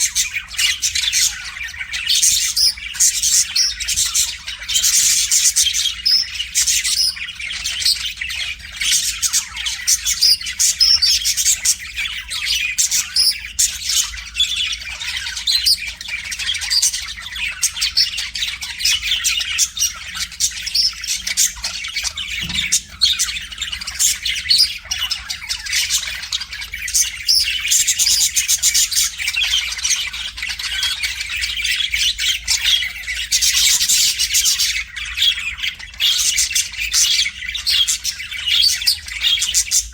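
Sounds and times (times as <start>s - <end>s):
budgerigar warbling: 18.8s - 29.2s.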